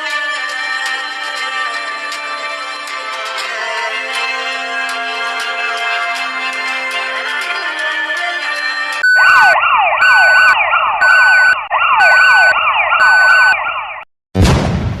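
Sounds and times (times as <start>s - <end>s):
steady beep: 9.0s - 13.6s
electronic siren alarm: 9.0s - 14.1s.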